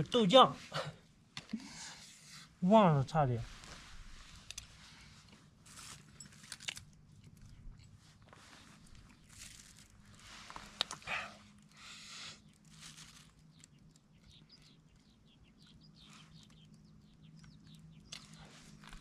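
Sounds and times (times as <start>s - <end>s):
food packaging rustling: 5.3s - 7.5s, 8.2s - 10.8s, 12.5s - 14.0s.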